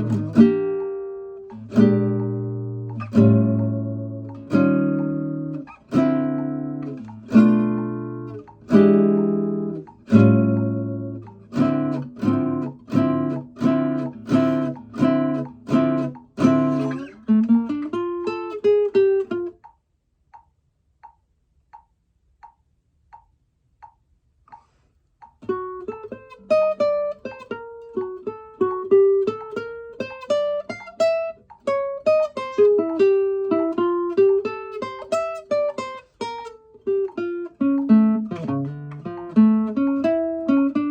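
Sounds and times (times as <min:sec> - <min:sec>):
acoustic guitar playing: 0:00.0 - 0:19.7, 0:25.4 - 0:40.9
faint taps: 0:19.2 - 0:26.2.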